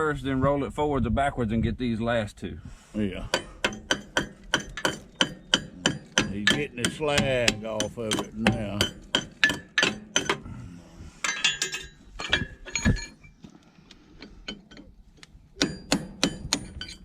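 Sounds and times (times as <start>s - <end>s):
hammer striking metal: 3.3s - 10.4s, 15.6s - 17.0s.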